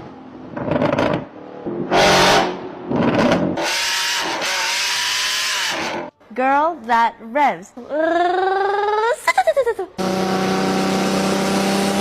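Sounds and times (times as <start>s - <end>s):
woman imitating revving engine: 7.9s - 9.3s.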